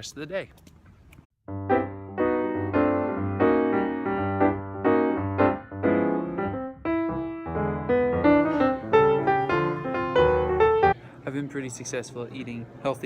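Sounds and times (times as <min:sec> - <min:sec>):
keyboard playing chords: 0:01.4 - 0:11.0.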